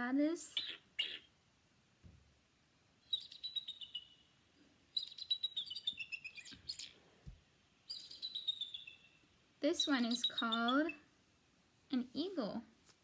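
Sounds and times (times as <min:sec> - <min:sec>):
eagle chirping: 0:00.5 - 0:01.4, 0:03.0 - 0:11.1.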